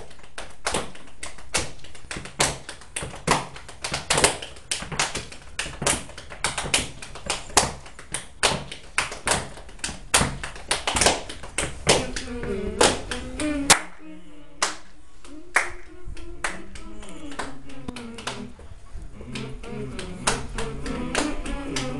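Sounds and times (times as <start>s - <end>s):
hands clapping and slapping: 0.0s - 14.0s, 14.6s - 18.6s, 19.3s - 21.9s
voices: 11.8s - 21.9s.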